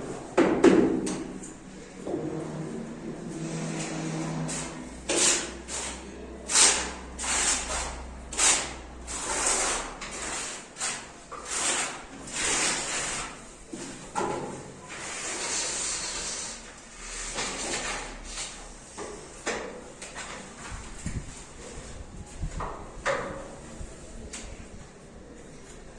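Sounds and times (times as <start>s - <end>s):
rough scraping strokes: 2.4s - 13.4s.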